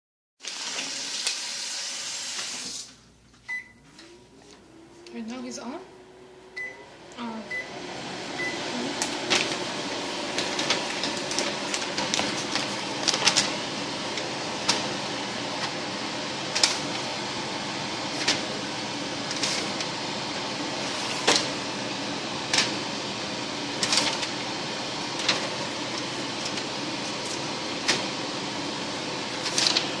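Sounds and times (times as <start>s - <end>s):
microwave humming: 0.4s - 30.0s
microwave beeps: 3.5s - 4.2s, 6.5s - 9.3s.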